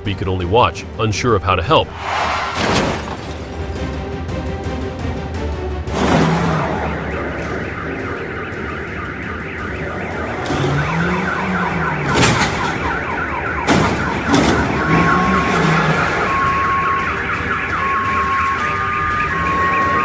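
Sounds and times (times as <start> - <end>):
car alarm warbling chirp: 6.3 - 20.0.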